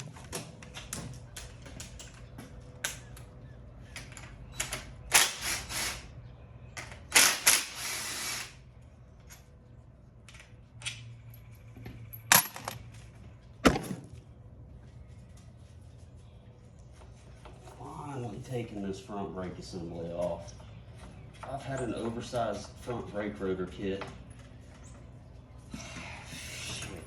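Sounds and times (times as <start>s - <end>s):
metal tools clinking: 11.3s - 12.9s.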